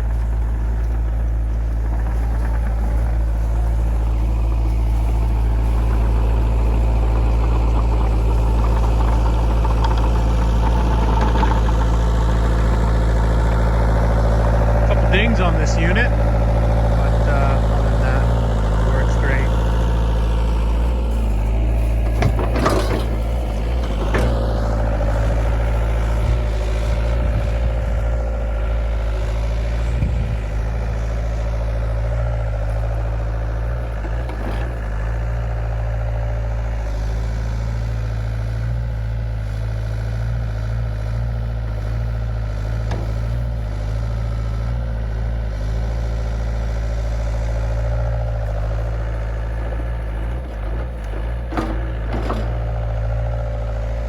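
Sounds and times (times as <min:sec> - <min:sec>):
excavator diesel engine running: 0:00.0 - 0:54.0
machine knocks: 0:22.1 - 0:24.5.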